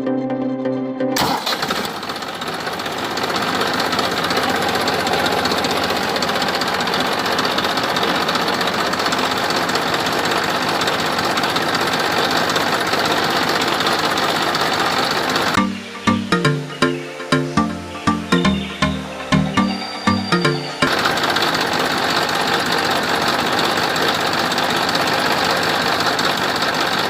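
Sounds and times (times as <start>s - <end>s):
small motor rattling buzz: 1.6s - 15.6s, 20.9s - 27.0s.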